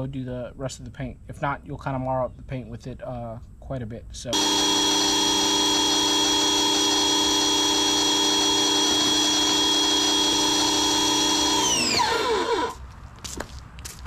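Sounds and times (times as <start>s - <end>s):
power tool motor running: 4.4s - 12.8s.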